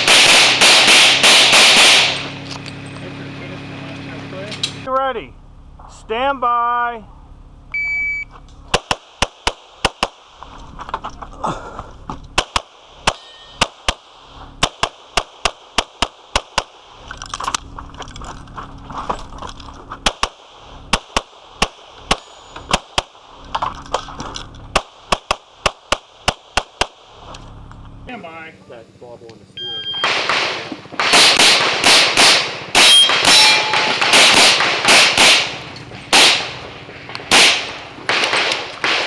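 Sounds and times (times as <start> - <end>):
pistol gunshots: 0.0 - 2.4, 8.7 - 10.4, 12.4 - 17.0, 20.0 - 23.3, 24.7 - 27.1, 30.0 - 39.0
shot timer beep: 7.7 - 8.4, 29.6 - 30.2, 32.8 - 34.0.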